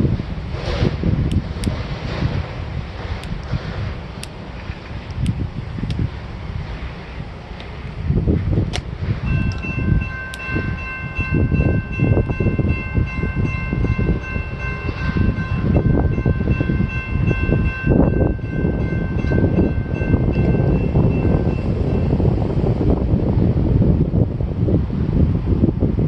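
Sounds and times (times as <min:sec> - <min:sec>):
freight train rumbling past: 0:00.0 - 0:26.0.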